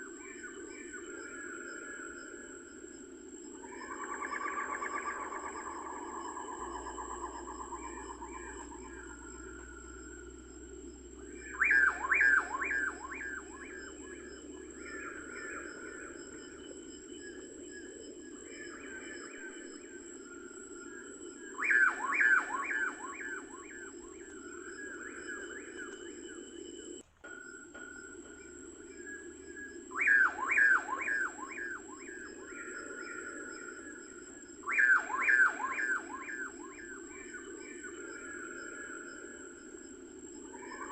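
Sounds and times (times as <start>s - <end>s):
bird whistling descending notes: 11.4s - 13.6s, 27.3s - 32.5s, 34.6s - 37.4s.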